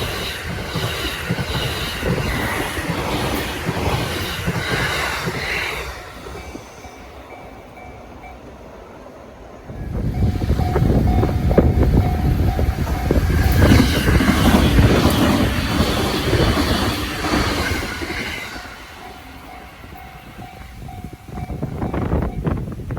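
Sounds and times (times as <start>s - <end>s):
train wheels clattering: 0.0s - 8.6s, 9.7s - 22.9s
crossing warning bell ringing: 6.2s - 9.0s, 9.7s - 22.9s.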